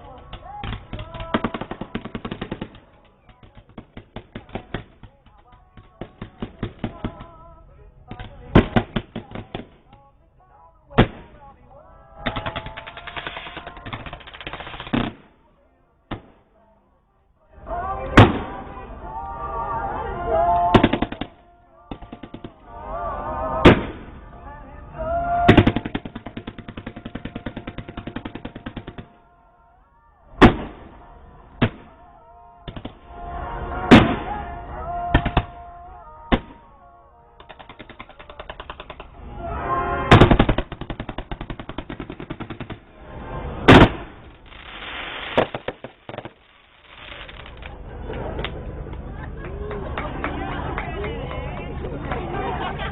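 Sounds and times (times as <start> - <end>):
fireworks booming: 0.0 - 10.1, 10.9 - 11.6, 12.2 - 15.5, 16.1 - 16.6, 18.0 - 18.9, 20.4 - 22.7, 23.5 - 24.3, 25.2 - 29.4, 30.3 - 36.7, 37.4 - 49.1
fireworks crackling: 0.0 - 16.7, 17.8 - 22.8, 23.4 - 24.4, 25.2 - 29.4, 30.3 - 39.4, 40.0 - 50.1
firework hissing burst: 12.8 - 15.3, 40.1 - 47.7.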